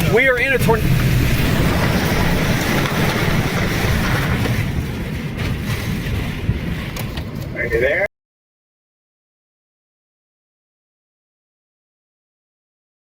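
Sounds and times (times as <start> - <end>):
wind buffeting microphone: 0.0 - 8.0
strong wind rushing: 0.0 - 8.1.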